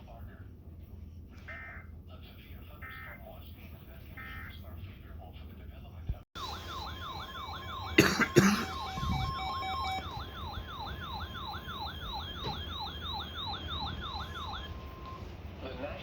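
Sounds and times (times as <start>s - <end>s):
electronic siren wailing: 6.4s - 15.3s
person coughing: 8.0s - 8.9s.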